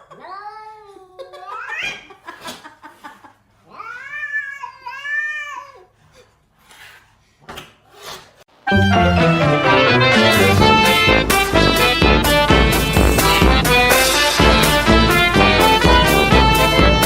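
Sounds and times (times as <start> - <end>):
cat yowling: 3.7 - 5.9.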